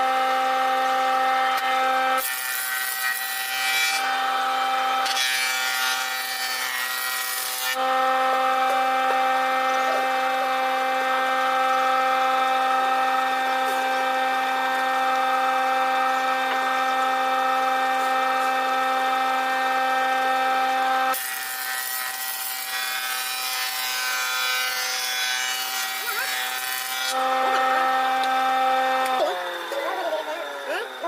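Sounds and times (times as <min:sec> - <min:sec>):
power tool whining on wood: 0:00.0 - 0:31.0
rough cutting sound: 0:21.1 - 0:31.0.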